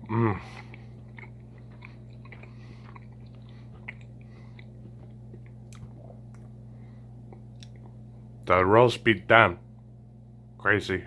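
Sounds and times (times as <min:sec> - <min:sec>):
person chewing: 0:00.0 - 0:08.1
steady low hum: 0:00.0 - 0:11.0.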